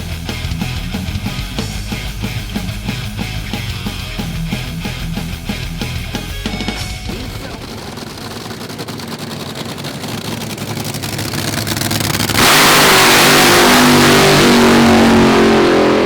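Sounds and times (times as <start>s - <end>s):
racing car engine at high revs: 7.1s - 16.0s.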